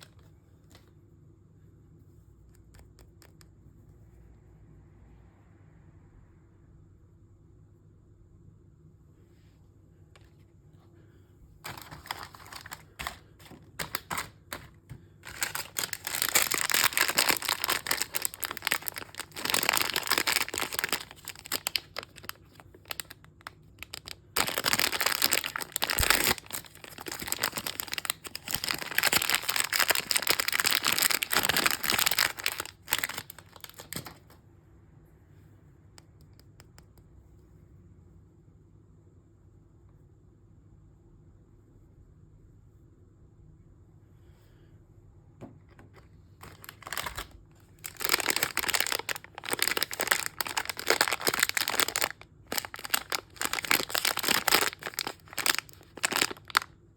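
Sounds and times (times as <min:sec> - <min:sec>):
packaging crinkling and tearing: 0:11.6 - 0:34.4, 0:46.4 - 0:56.7.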